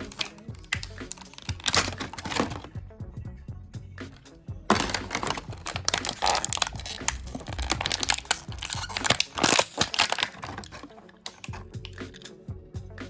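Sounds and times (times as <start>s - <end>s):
plastic packaging crinkling: 0.0s - 2.7s, 4.7s - 12.2s
background music: 0.0s - 13.0s.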